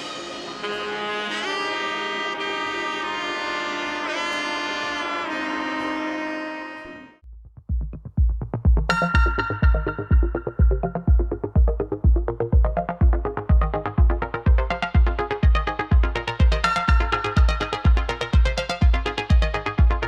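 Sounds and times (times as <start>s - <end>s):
sustained brass-like melody: 0.0s - 7.2s, 8.9s - 20.0s
electronic music with bass-drum beat: 7.3s - 20.0s.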